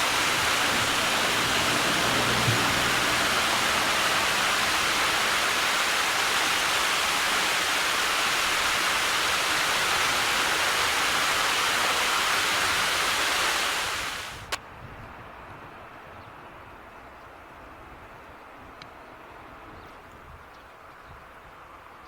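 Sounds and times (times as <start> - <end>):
flowing water rushing: 0.0 - 14.6.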